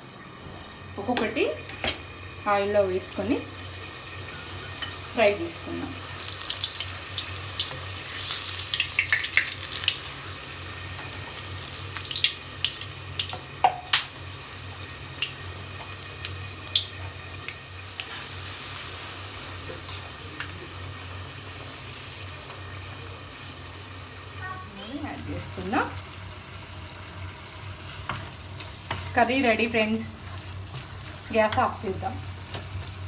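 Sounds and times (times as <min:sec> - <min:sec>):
food sizzling in hot oil: 0:00.0 - 0:33.0.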